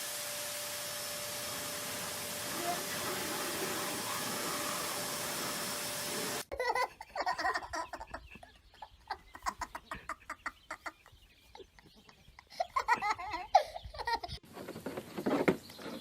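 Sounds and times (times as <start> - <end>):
steady hiss: 0.0 - 6.5.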